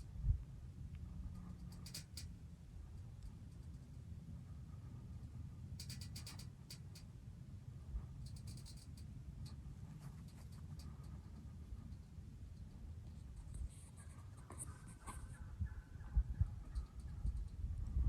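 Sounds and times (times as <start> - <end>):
low steady rumble: 0.0 - 18.0
light clicks: 5.8 - 7.1.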